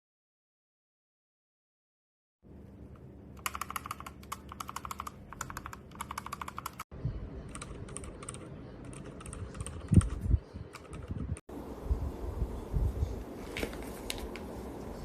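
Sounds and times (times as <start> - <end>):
typing on mechanical keyboard: 3.4 - 6.9, 7.5 - 11.2.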